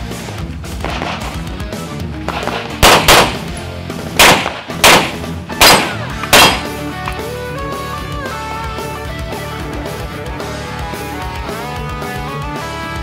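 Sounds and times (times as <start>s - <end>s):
background music: 0.0s - 13.0s
handgun shots: 0.8s - 1.4s, 2.3s - 3.6s, 4.2s - 7.2s.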